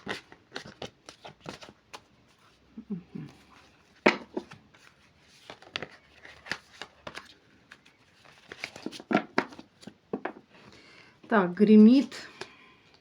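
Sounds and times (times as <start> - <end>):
cards being shuffled by hand: 0.0 - 2.6, 3.2 - 10.4.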